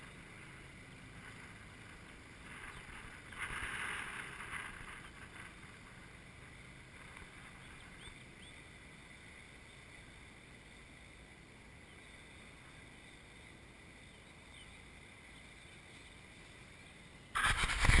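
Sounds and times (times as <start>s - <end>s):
light wind on microphone: 0.0s - 9.9s, 17.4s - 18.0s
loud rustling burst: 17.4s - 18.0s.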